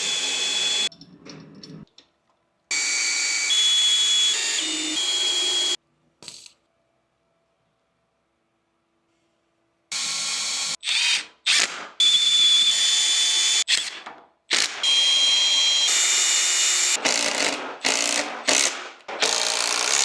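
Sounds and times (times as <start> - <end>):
power drill whining: 0.0 - 0.9, 2.8 - 5.8.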